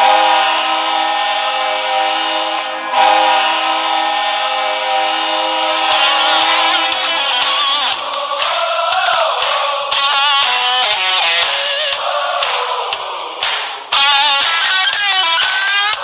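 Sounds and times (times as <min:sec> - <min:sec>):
arena goal horn blasting: 0:00.0 - 0:09.1
crowd cheering: 0:00.0 - 0:16.0
goal music: 0:00.0 - 0:16.0.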